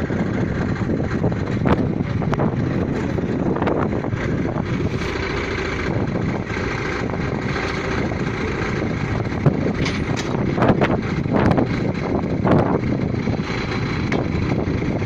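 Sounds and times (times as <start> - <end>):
pneumatic drilling rig running: 0.0 - 15.0.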